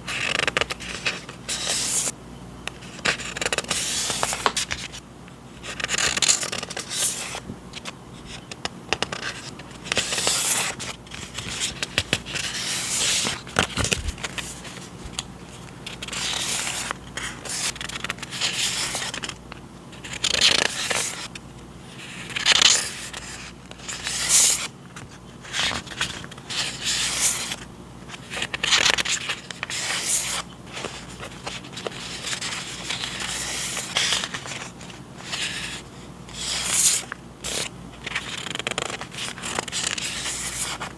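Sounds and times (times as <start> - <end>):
paper rustling and scraping: 5.6 - 40.9.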